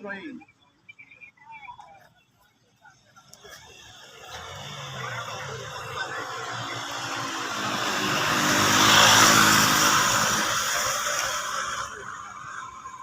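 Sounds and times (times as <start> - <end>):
motor vehicle passing close: 3.3 - 13.0.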